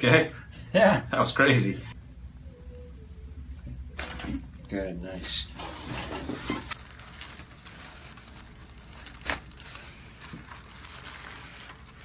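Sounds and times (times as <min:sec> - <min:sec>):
crinkling and rustling on a table: 0:05.8 - 0:12.0.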